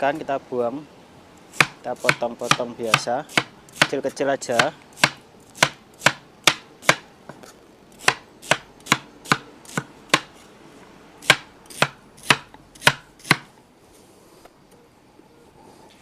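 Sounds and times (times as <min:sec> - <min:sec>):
knife chopping: 0:01.5 - 0:07.1, 0:08.0 - 0:10.3, 0:11.2 - 0:13.5.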